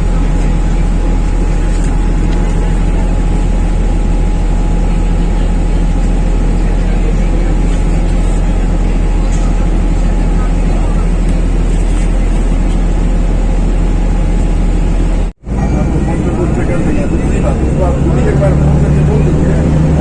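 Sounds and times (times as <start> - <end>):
vehicle engine drone from inside: 0.0 - 20.0.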